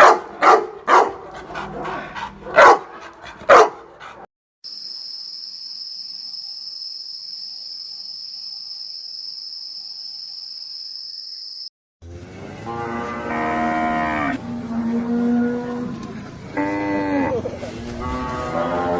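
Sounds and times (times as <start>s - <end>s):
dog barking: 0.0s - 4.2s
insect high-pitched trill: 4.7s - 11.7s.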